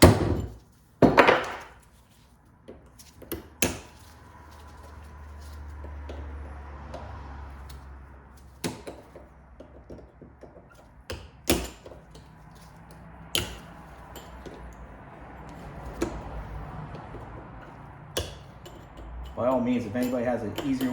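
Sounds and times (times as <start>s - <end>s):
hammer striking chisel on metal: 3.2s - 4.0s, 8.6s - 20.9s.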